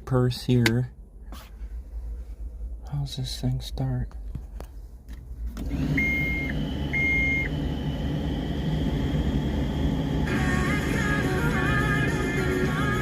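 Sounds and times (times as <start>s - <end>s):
machine engine rumble: 5.1s - 12.3s
short electronic beeps: 6.0s - 7.5s
music: 10.3s - 13.0s.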